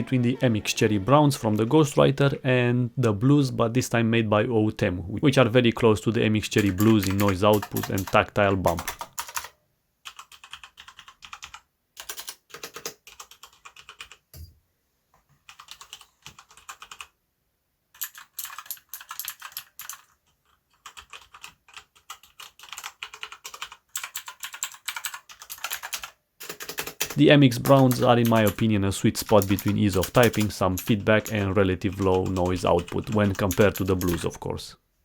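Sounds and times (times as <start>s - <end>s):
mechanical keyboard typing: 6.6s - 14.3s, 15.4s - 17.1s, 18.0s - 34.4s.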